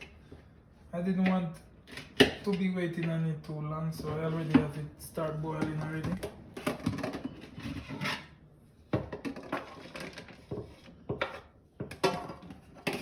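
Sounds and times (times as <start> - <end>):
kitchen knocks and clatters: 5.5 - 13.0.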